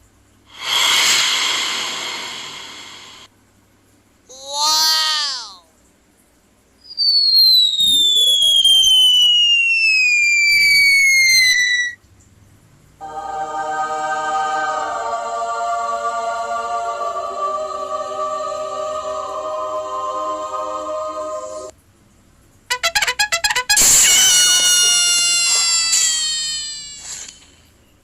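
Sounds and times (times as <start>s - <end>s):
falling whistle: 6.8s - 12.0s, 22.8s - 27.4s
held musical chord: 13.0s - 21.7s.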